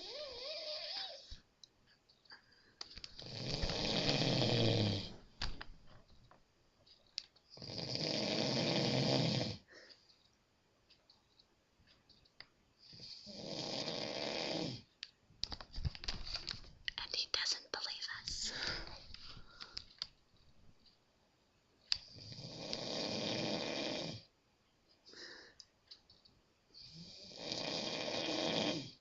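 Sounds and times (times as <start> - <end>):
man snoring: 0.0 - 1.3, 3.2 - 5.1, 7.6 - 9.7, 12.9 - 14.9, 22.1 - 24.3, 26.8 - 29.0.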